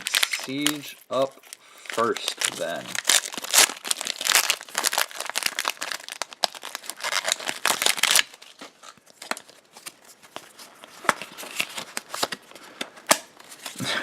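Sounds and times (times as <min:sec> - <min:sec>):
foil wrapper crinkling and tearing: 0:00.0 - 0:13.8.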